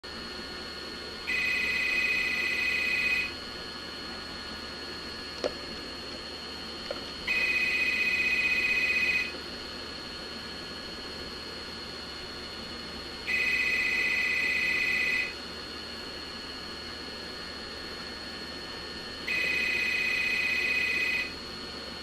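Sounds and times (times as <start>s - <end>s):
telephone ringing: 1.3s - 3.3s, 7.3s - 9.3s, 13.3s - 15.3s, 19.3s - 21.3s.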